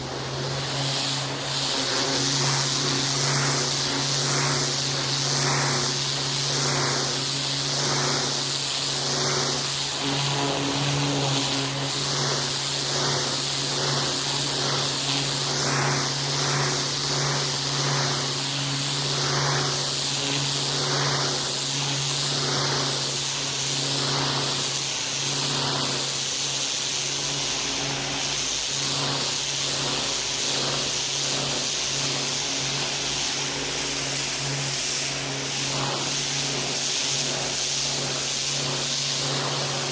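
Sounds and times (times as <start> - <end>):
pressure washer spray hissing: 0.2 - 25.3, 30.3 - 39.9.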